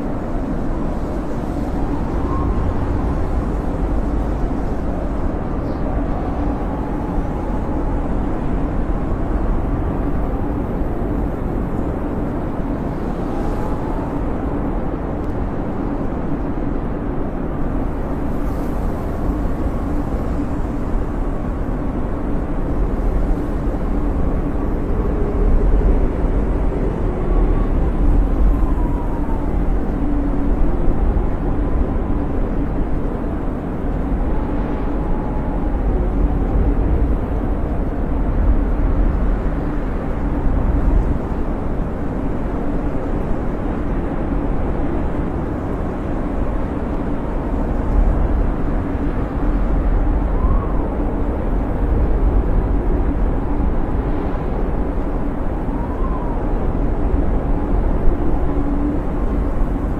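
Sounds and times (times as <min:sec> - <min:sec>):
wind blowing with deep rumble: 0:00.0 - 0:59.9
faint whistling howl: 0:01.5 - 0:08.5, 0:24.4 - 0:31.8, 0:49.9 - 0:52.2, 0:55.2 - 0:59.2.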